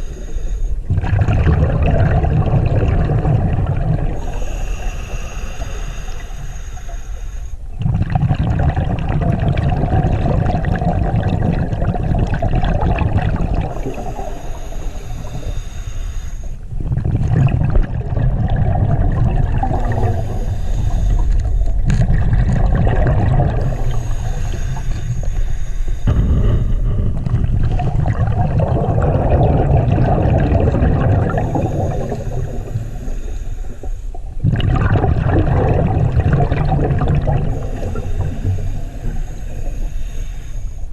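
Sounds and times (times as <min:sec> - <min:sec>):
regulator inhale hissing: 0:00.0 - 0:00.9, 0:04.1 - 0:07.7, 0:13.6 - 0:16.8, 0:19.6 - 0:21.9, 0:23.4 - 0:27.5, 0:31.3 - 0:34.4, 0:37.3 - 0:40.9
exhaled bubbles rushing: 0:00.8 - 0:04.4, 0:07.7 - 0:14.4, 0:16.7 - 0:24.9, 0:26.0 - 0:33.4, 0:34.2 - 0:39.7.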